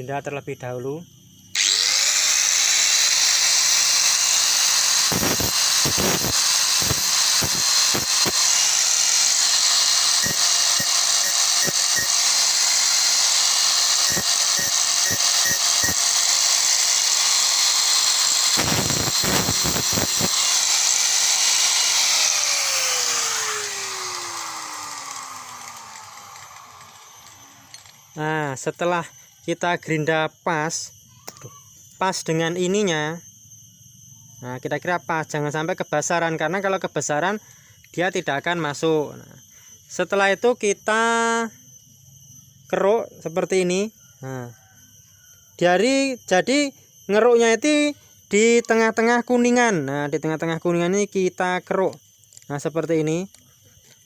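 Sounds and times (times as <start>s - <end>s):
electric grinder whining: 1.5s - 28.3s
grinding disc on steel spring: 1.6s - 29.2s.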